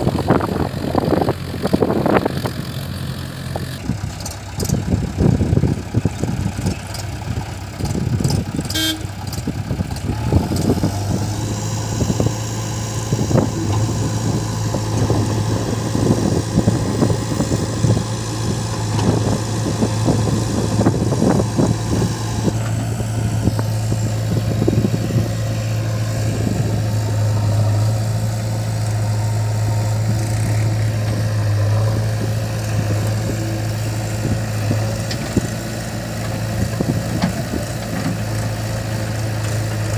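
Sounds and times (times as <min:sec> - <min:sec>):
heavy diesel machinery running: 0:00.0 - 0:39.9
horn toot: 0:08.7 - 0:09.1.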